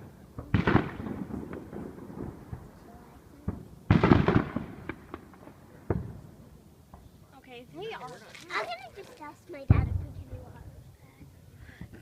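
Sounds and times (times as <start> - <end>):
small firework pops: 0.0 - 2.7, 3.4 - 6.3
firework bang with crackling: 0.0 - 7.1, 9.6 - 10.7.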